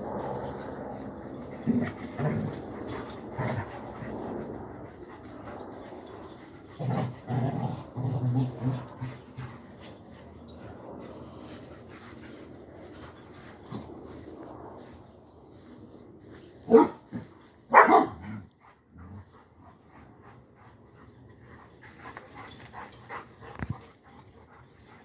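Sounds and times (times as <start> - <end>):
dogs making low vocal noises: 0.0 - 17.3.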